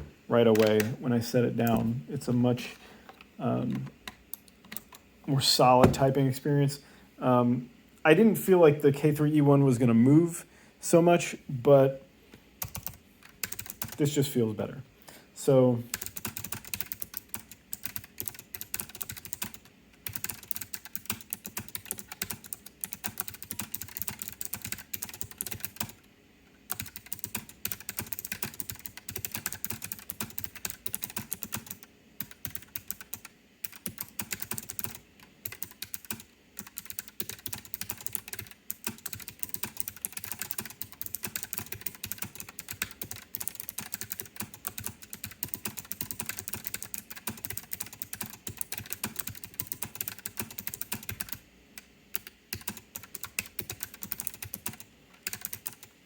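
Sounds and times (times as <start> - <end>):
mechanical keyboard typing: 12.6 - 14.0, 15.9 - 26.0, 26.7 - 55.9.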